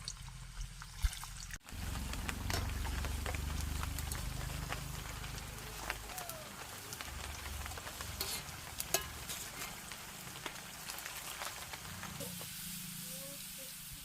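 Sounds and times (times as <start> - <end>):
wood fire crackling and popping: 1.1 - 12.5
food sizzling in pot: 1.6 - 14.0.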